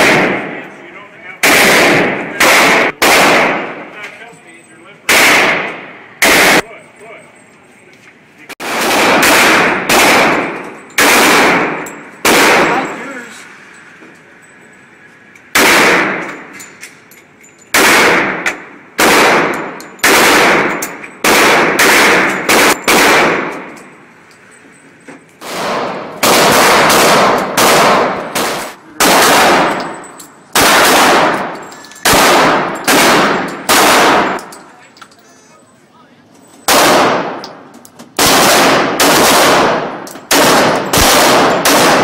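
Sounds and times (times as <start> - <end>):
loud gunshots with echo: 0.0 - 0.7, 1.3 - 3.9, 5.1 - 6.7, 8.6 - 13.0, 15.5 - 16.5, 17.7 - 23.8, 25.4 - 34.5, 36.7 - 37.4, 38.2 - 42.0.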